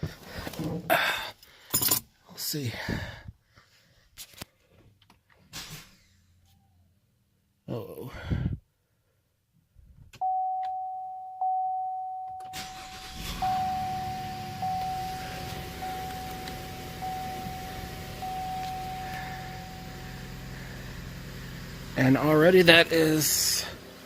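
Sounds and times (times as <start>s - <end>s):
warning chime: 10.2s - 20.4s
car engine starting and idling: 11.4s - 24.0s.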